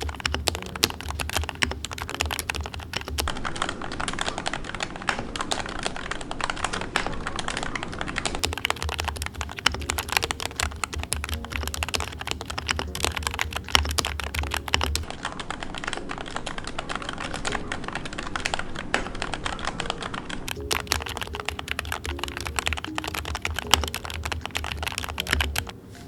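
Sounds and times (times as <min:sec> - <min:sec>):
fast mechanical keyboard typing: 0:00.0 - 0:04.3, 0:08.2 - 0:15.1, 0:20.0 - 0:25.8.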